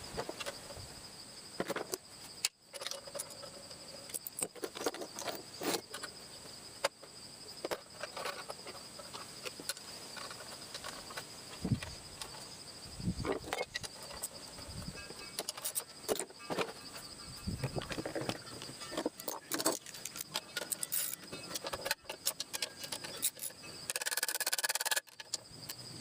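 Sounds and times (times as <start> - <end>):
clicks and clinks of metal parts: 1.6 - 6.1, 13.3 - 17.1, 17.7 - 25.8.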